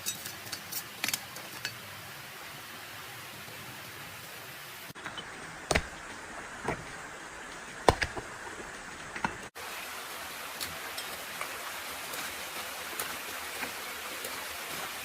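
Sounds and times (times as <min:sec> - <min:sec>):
sharp cracks and knocks: 0:05.6 - 0:06.9, 0:07.5 - 0:09.5.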